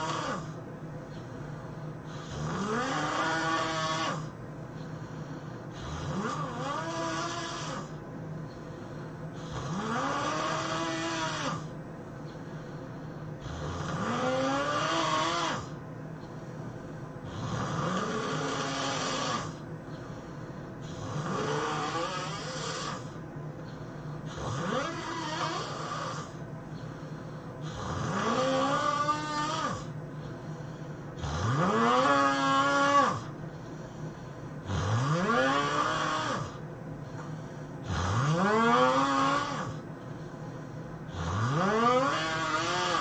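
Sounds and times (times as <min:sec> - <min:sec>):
person snoring heavily: 0:00.0 - 0:00.6, 0:02.0 - 0:04.4, 0:05.6 - 0:08.0, 0:09.4 - 0:11.7, 0:13.4 - 0:15.8, 0:17.2 - 0:19.6, 0:20.8 - 0:23.2, 0:24.2 - 0:26.4, 0:27.6 - 0:30.0, 0:30.8 - 0:33.4, 0:34.2 - 0:36.6, 0:37.2 - 0:39.9, 0:41.1 - 0:43.0.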